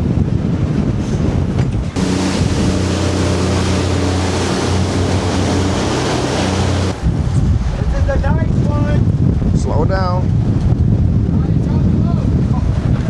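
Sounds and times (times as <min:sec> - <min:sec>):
wind buffeting microphone: 0:00.0 - 0:13.0
boat motor running: 0:01.8 - 0:07.4
rushing water: 0:02.0 - 0:07.8.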